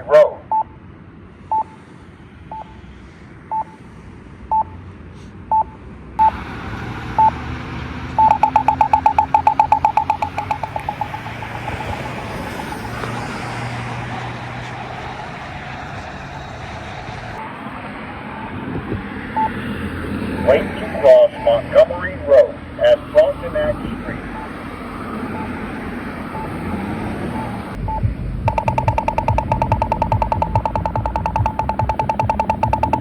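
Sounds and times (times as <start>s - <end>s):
pedestrian signal locator beep: 0.0s - 0.8s, 1.5s - 1.8s, 2.5s - 2.8s, 3.5s - 3.8s, 4.5s - 4.8s, 5.5s - 6.4s, 7.2s - 7.4s, 8.2s - 13.2s, 19.4s - 19.6s, 20.2s - 24.7s, 25.3s - 25.7s, 26.3s - 26.6s, 27.4s - 33.0s
traffic noise: 0.0s - 33.0s
rapid ticking of pedestrian signal: 5.5s - 6.4s, 7.2s - 7.4s, 8.2s - 13.2s, 19.4s - 19.6s, 27.4s - 33.0s.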